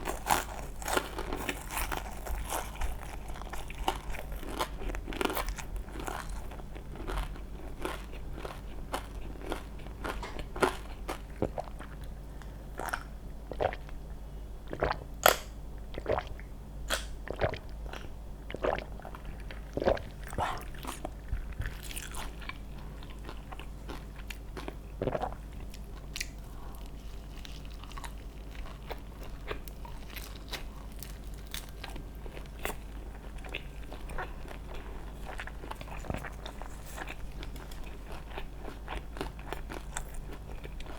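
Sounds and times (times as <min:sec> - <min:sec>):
crunchy food chewing: 0:00.0 - 0:13.9, 0:16.9 - 0:40.9.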